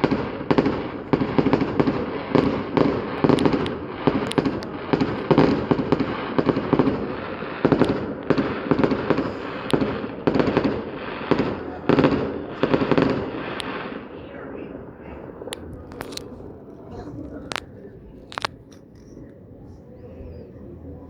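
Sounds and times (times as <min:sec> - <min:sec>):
fireworks crackle: 0:00.0 - 0:16.4
fireworks bangs and booms: 0:00.0 - 0:16.6.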